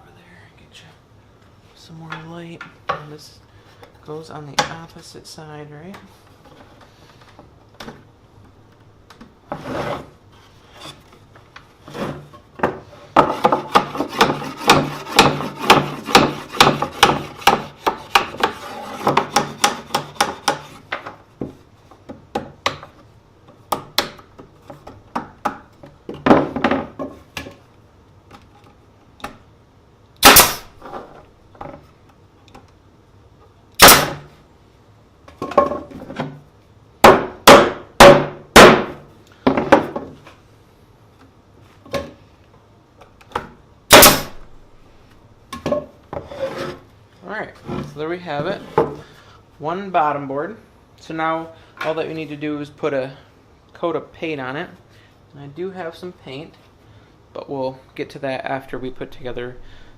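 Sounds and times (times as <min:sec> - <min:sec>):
rubbing and scraping on wood: 0:09.5 - 0:21.8, 0:46.2 - 0:49.0.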